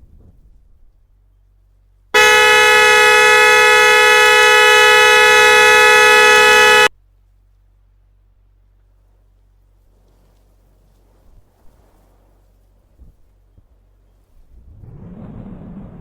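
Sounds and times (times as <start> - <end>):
loud horn blast: 2.2 - 6.9.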